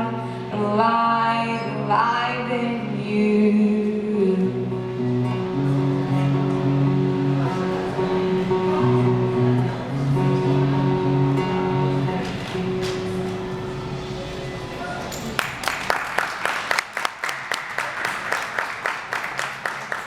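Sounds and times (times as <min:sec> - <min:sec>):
strummed acoustic guitar chords: 0:01.8 - 0:15.3.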